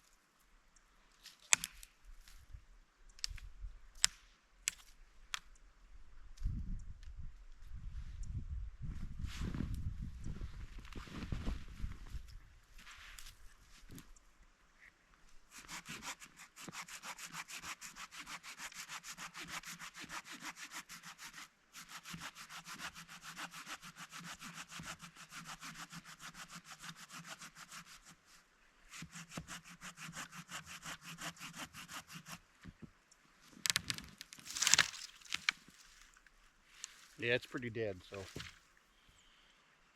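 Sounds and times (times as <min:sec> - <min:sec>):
hand saw cutting wood: 0:15.5 - 0:28.2, 0:28.9 - 0:32.4.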